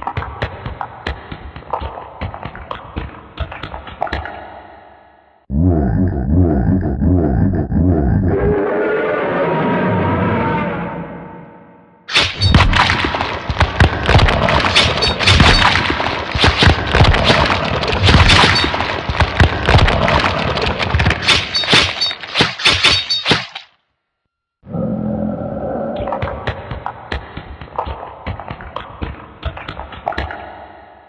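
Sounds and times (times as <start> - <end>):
crashing and breaking: 12.1 - 23.6.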